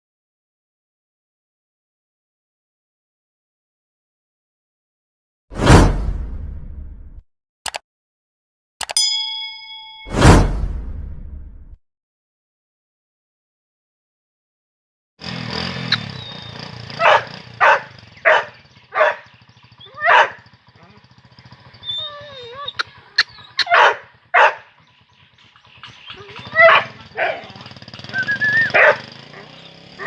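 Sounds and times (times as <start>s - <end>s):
sharp clicks: 8.8s - 9.0s
dog barking: 17.0s - 21.0s, 23.6s - 24.7s, 26.2s - 27.7s, 28.6s - 30.0s.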